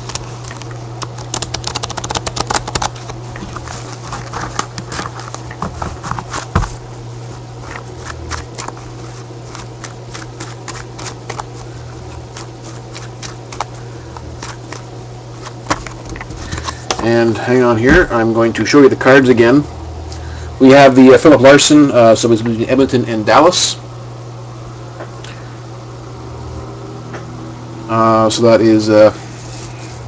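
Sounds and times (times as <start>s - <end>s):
cards clicking and tapping: 0.0s - 6.8s, 7.6s - 17.0s
cards flicking: 0.0s - 6.8s, 7.6s - 17.0s
steady low hum: 0.0s - 30.0s.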